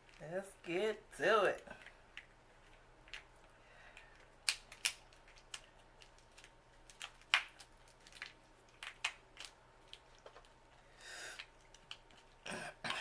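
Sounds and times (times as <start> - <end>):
lobster shell cracking: 1.8 - 3.3, 3.9 - 10.6, 11.3 - 13.0.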